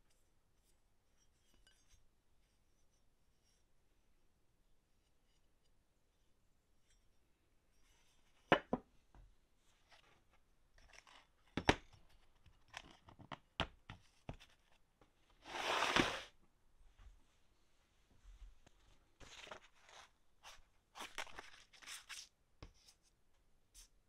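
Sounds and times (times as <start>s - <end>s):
rasping scrape: 15.4s - 16.3s.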